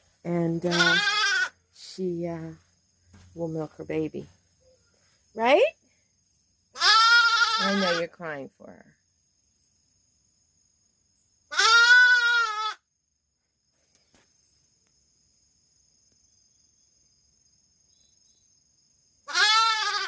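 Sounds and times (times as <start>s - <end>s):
lamb bleating: 0.7s - 1.6s, 6.8s - 8.1s, 11.5s - 12.8s, 19.3s - 20.0s.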